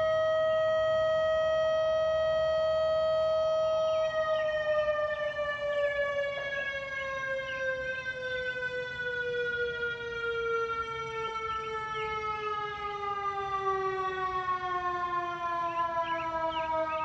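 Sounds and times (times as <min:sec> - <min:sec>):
warning siren winding down: 0:00.0 - 0:17.0
faint bird chirps: 0:15.6 - 0:17.0.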